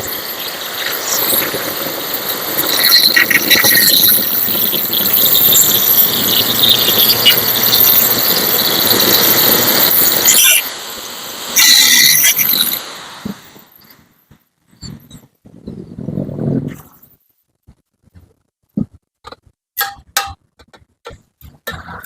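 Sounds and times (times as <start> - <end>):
angle grinder cutting steel: 0.0 - 12.9.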